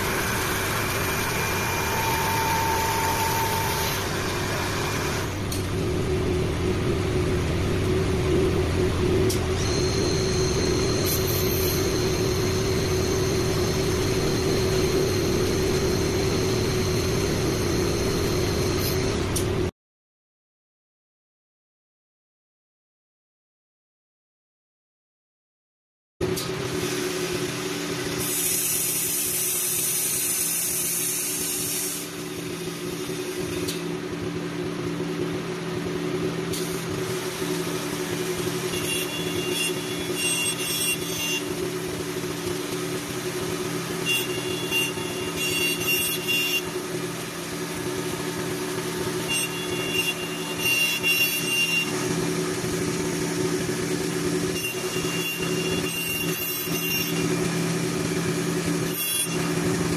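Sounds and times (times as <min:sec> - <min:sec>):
lathe motor hum: 0:00.0 - 0:19.6
thin whine: 0:00.0 - 0:19.7, 0:36.6 - 0:59.9.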